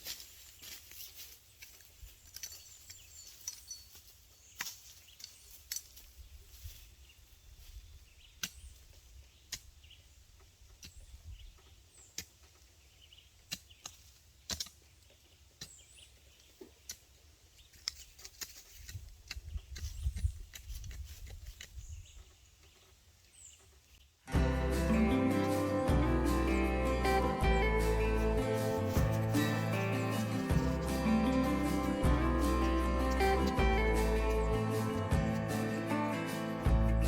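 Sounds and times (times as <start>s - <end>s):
wind rumble on microphone: 18.9s - 22.2s.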